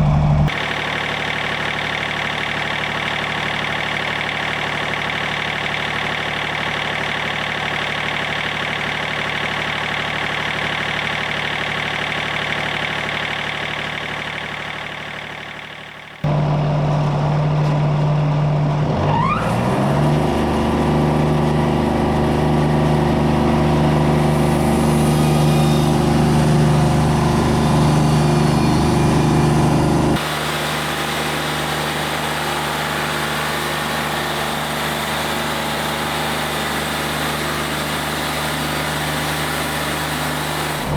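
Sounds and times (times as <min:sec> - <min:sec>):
engine revving: 0:00.5 - 0:16.5, 0:18.9 - 0:40.9
bandsaw mill sawing log: 0:19.4 - 0:40.9.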